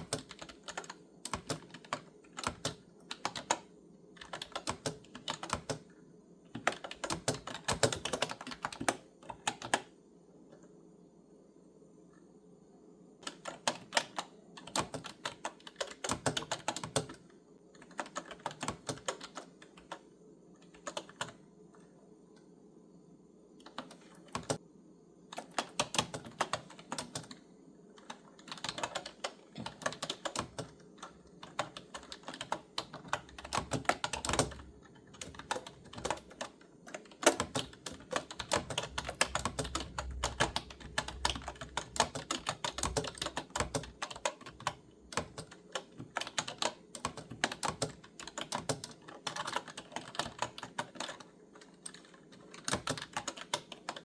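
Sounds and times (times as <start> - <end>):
clicky keyboard typing: 0.0 - 10.8, 13.2 - 22.5, 23.6 - 24.6, 25.3 - 54.0.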